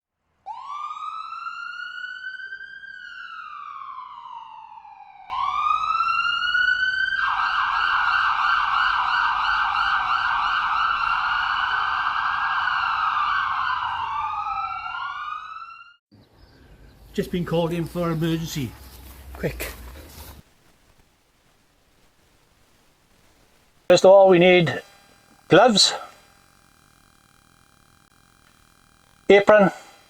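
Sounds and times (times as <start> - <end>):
siren wailing: 0.5 - 16.0, 23.9 - 30.0.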